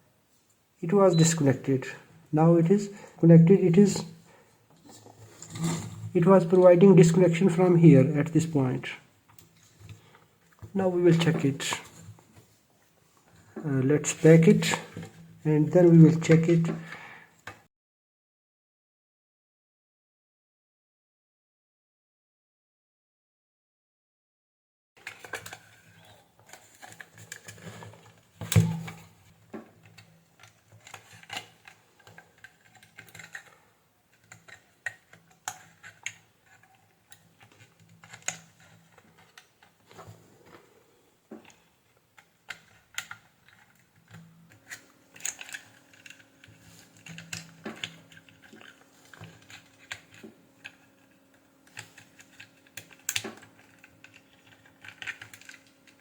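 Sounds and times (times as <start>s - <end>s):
plastic parts clicking and tapping: 25.0s - 25.8s, 26.4s - 40.0s, 42.2s - 56.0s.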